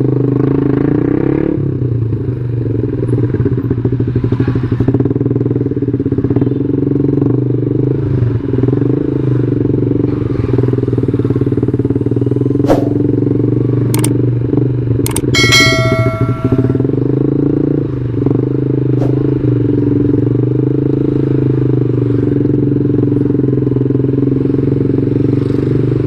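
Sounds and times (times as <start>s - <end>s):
motorcycle engine running: 0.0s - 26.0s
sharp click: 14.0s - 14.2s, 15.1s - 15.3s.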